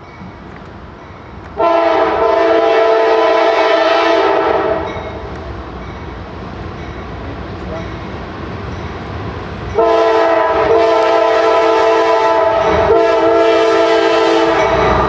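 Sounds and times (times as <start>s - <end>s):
passing train rumble: 0.0s - 15.0s
train air horn blast: 1.6s - 5.0s, 9.8s - 15.0s.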